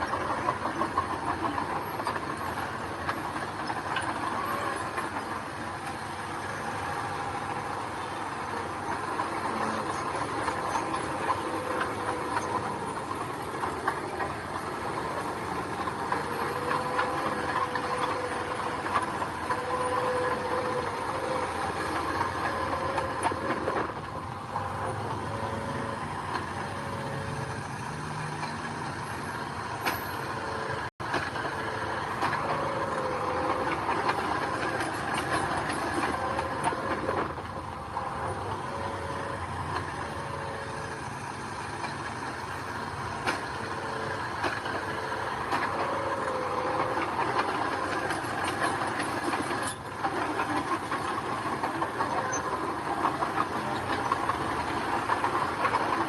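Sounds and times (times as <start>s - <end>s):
diesel engines running: 0.0s - 56.0s.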